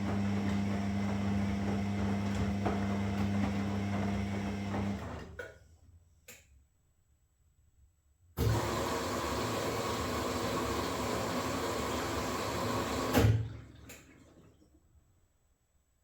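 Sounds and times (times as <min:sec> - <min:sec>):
washing machine water rushing: 0:00.0 - 0:05.2, 0:08.4 - 0:14.8
click: 0:06.2 - 0:06.6.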